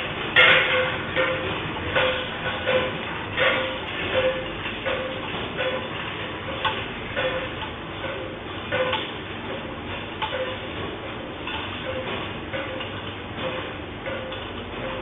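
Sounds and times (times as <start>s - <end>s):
rumbling rattle with clinks: 0.3s - 15.0s.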